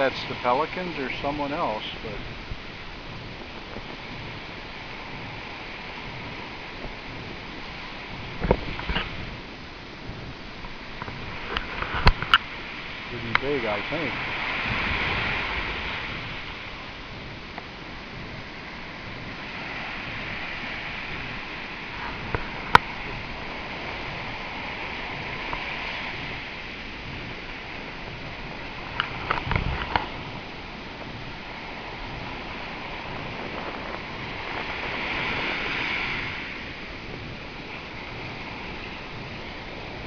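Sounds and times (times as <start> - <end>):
surf washing on a beach: 0.0 - 40.0.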